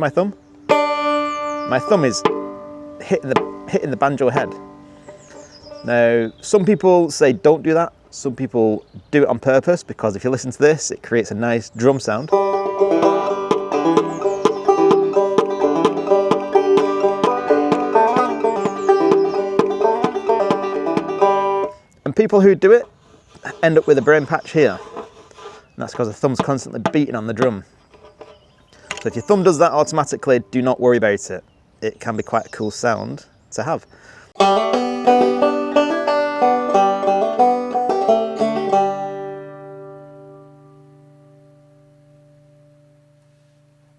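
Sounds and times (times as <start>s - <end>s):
thumb tapping banjo head: 0.0s - 6.0s, 12.2s - 25.2s, 25.8s - 30.5s
banjo plucked tune: 0.0s - 6.1s, 12.1s - 25.2s, 25.8s - 30.8s, 34.4s - 41.7s.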